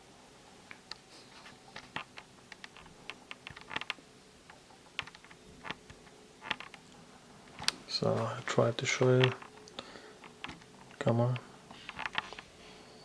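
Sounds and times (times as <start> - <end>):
light clicks and taps: 7.5 - 12.5.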